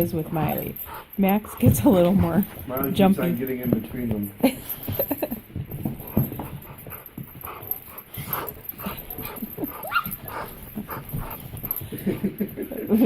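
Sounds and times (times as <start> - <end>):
dog whining: 6.0 - 12.0
dogs whimpering and yipping: 6.0 - 12.2.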